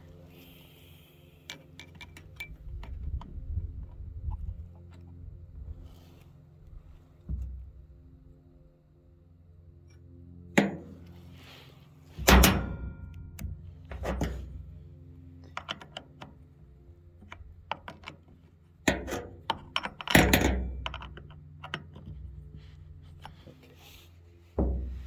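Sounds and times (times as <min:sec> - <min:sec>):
metal clunks and knocks: 0:12.2 - 0:14.6, 0:24.6 - 0:25.0.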